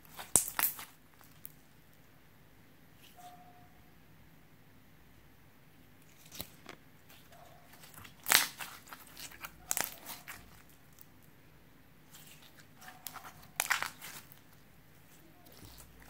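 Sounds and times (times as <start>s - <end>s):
slime popping and crackling: 0.0s - 1.6s, 6.2s - 11.1s, 12.1s - 14.5s, 15.4s - 16.0s.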